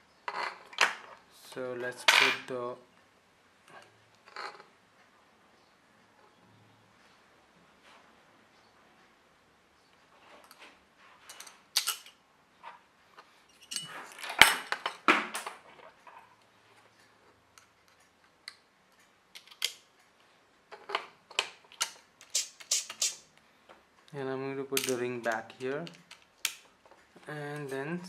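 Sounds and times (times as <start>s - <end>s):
small metal parts clicking: 11.3s - 12.2s, 13.5s - 15.5s, 17.6s - 19.9s, 20.7s - 23.2s, 24.8s - 27.7s.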